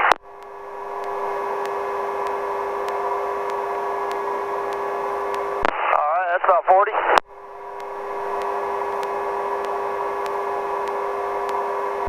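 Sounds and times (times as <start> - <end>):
helicopter turbine whine: 0.0 - 12.0
radio call: 5.6 - 7.2.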